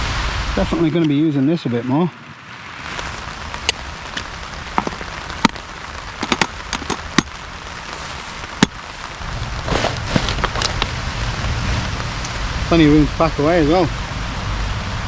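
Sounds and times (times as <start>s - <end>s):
rain pattering on a tarp: 0.0s - 15.0s
loud rustling: 7.6s - 11.2s.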